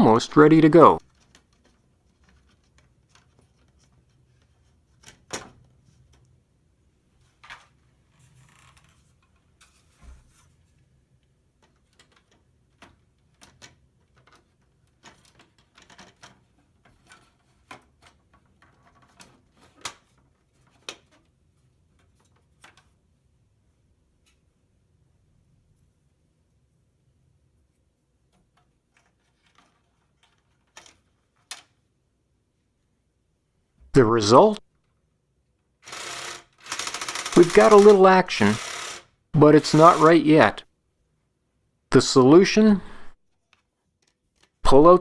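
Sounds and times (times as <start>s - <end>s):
plastic toy parts clicking: 35.8s - 39.0s.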